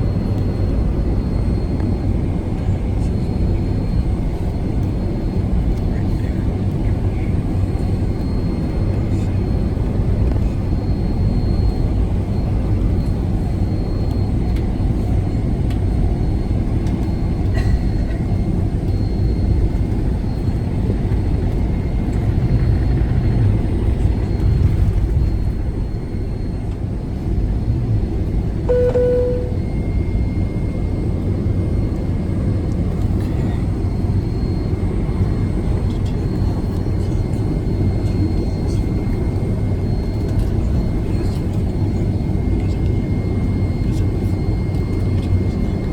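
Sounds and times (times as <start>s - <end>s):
jet engine cabin rumble: 0.0s - 45.9s
faint steady whine: 17.9s - 45.9s
short chime: 28.7s - 29.9s.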